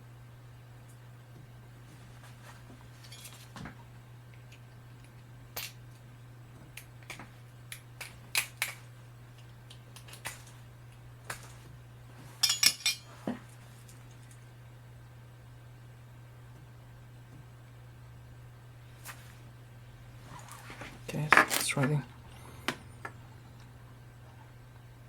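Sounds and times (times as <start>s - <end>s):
steady low hum: 0.0s - 25.0s
metal tools clicking and tapping: 12.4s - 13.1s.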